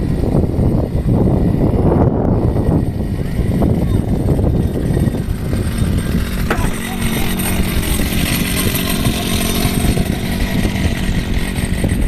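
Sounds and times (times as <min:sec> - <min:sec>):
small engine running: 0:00.0 - 0:12.0.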